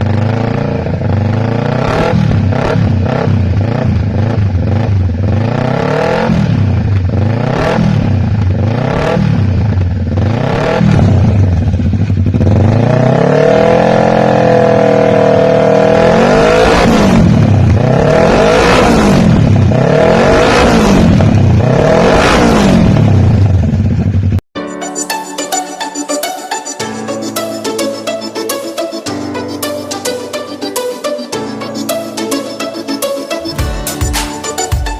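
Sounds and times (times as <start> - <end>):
motorcycle engine revving: 0.0 - 24.4.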